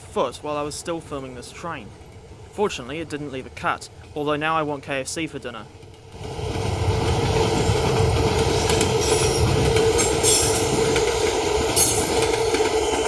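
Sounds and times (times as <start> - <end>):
train wagons rumbling on track: 0.0 - 13.0
high-pitched wheel squeals: 11.8 - 12.6.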